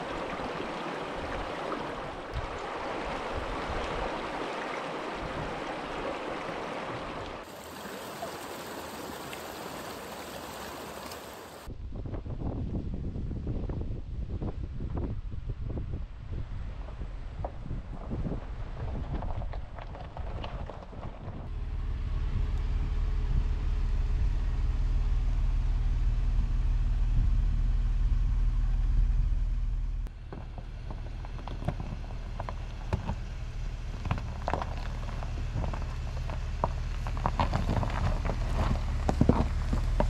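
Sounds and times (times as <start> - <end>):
car engine and road rumble: 16.4 - 40.0.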